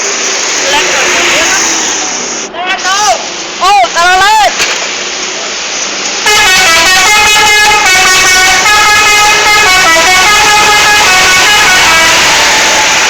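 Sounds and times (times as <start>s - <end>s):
multi-tone bus horn tune: 6.2s - 13.0s.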